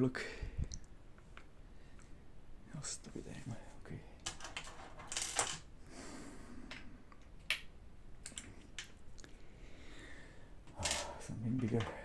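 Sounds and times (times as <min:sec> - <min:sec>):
rifle parts clicking and scraping: 0:10.7 - 0:11.9.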